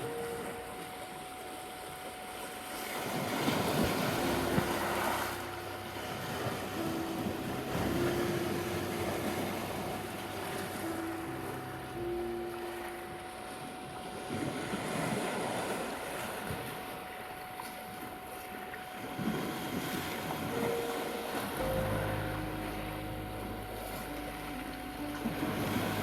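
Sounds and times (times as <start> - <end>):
sea waves on beach: 0.0 - 26.0
soft held music notes: 20.6 - 26.0.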